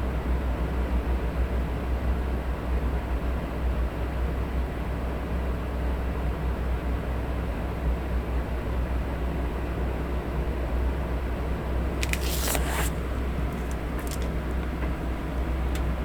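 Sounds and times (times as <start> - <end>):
electric fan humming: 11.8 - 16.0.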